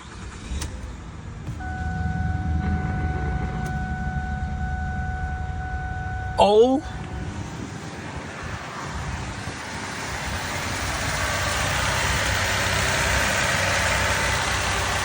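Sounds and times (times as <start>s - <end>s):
car engine running: 0.0s - 15.0s
rushing noise: 0.0s - 15.0s.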